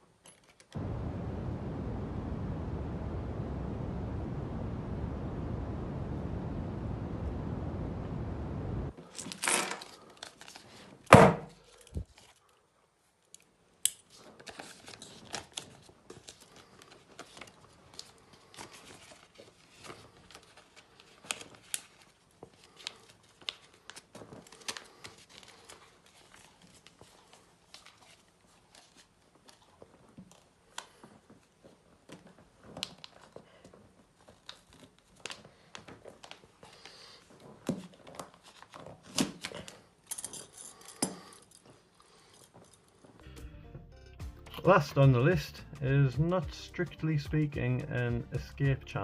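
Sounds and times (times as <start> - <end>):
steady hiss: 0.8 - 9.0
handcuffs clicking and rattling: 40.0 - 41.7.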